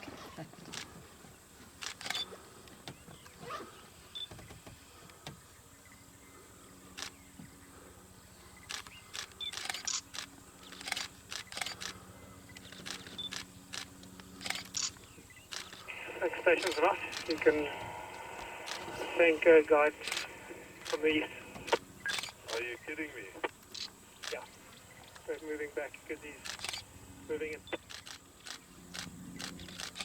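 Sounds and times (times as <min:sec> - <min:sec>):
faint low hum: 0:00.0 - 0:30.0
camera shutters clicking: 0:01.8 - 0:02.3, 0:08.6 - 0:12.0, 0:12.6 - 0:19.2, 0:20.0 - 0:22.8, 0:23.4 - 0:24.5, 0:26.2 - 0:26.9, 0:27.6 - 0:30.0.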